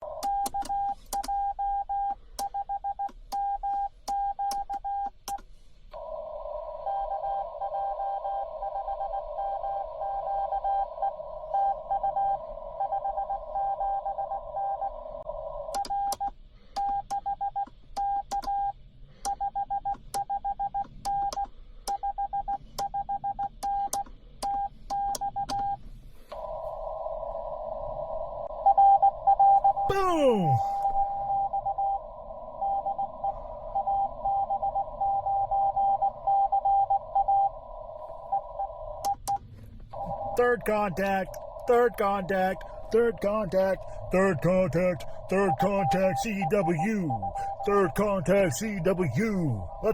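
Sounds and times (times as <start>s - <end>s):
morse code beeps: 0.3s - 5.1s, 40.0s - 49.9s
radio receiver hiss: 39.9s - 49.9s.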